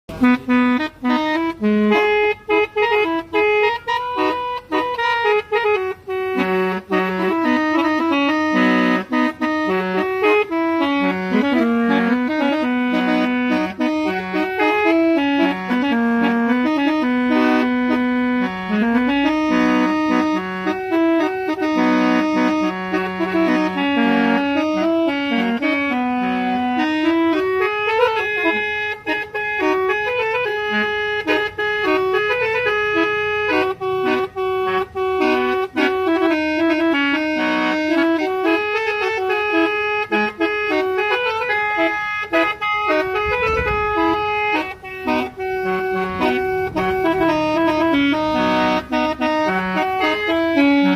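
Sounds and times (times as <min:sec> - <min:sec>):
musical horn playing a tune: 0:00.1 - 0:50.9.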